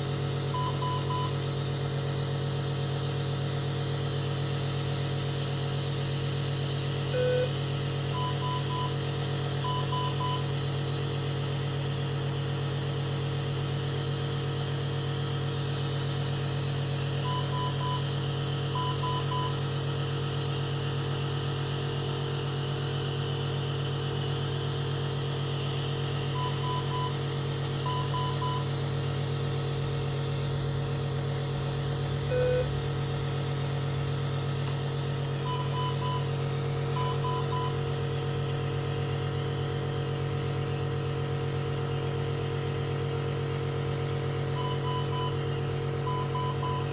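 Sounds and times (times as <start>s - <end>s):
nebulizer compressor hum: 0.0s - 46.9s
monitor alarm short high beeps: 0.5s - 1.4s, 7.1s - 9.0s, 9.6s - 10.5s, 17.2s - 18.1s, 18.7s - 19.6s, 26.3s - 27.2s, 27.8s - 28.7s, 32.3s - 32.8s, 35.4s - 37.8s, 44.5s - 45.4s, 46.0s - 46.9s
single lower beep: 7.2s - 7.6s, 8.2s - 9.0s, 27.9s - 28.7s, 32.3s - 32.8s, 35.4s - 36.3s.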